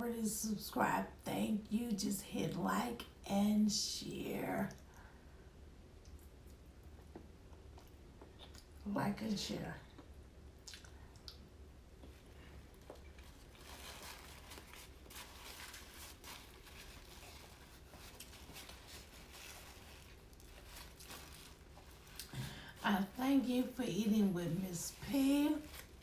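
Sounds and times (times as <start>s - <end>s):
low steady hum: 0.0s - 26.0s
faint crinkling: 10.7s - 26.0s.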